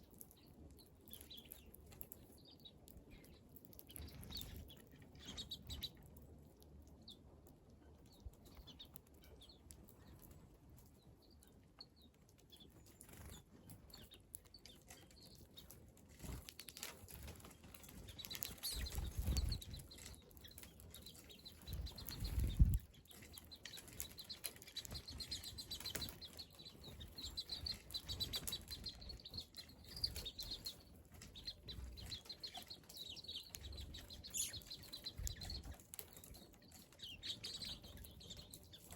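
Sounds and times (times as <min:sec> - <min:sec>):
small birds chirping: 0:00.0 - 0:38.9
birds fluttering wings: 0:16.2 - 0:29.3.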